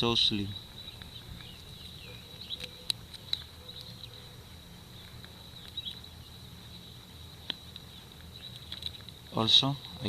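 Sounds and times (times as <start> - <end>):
faint chirps: 0.0 - 8.9
sharp small clicks: 0.7 - 4.3, 5.0 - 6.2, 7.4 - 10.0.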